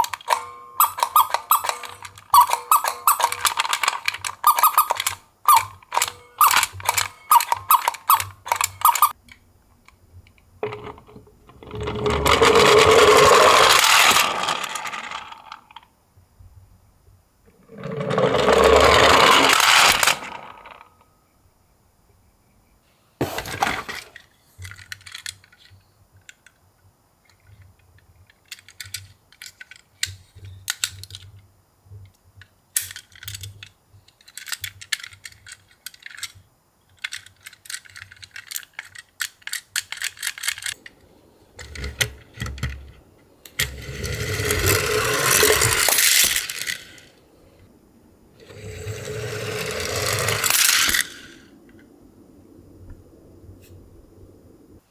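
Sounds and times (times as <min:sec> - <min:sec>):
toy cars clattering: 0:00.0 - 0:09.4, 0:10.3 - 0:15.9, 0:17.6 - 0:21.0, 0:23.2 - 0:26.7, 0:27.3 - 0:31.4, 0:32.1 - 0:47.7, 0:48.4 - 0:51.9
small clicks and rattles: 0:00.0 - 0:15.9, 0:23.4 - 0:47.6, 0:48.4 - 0:51.9.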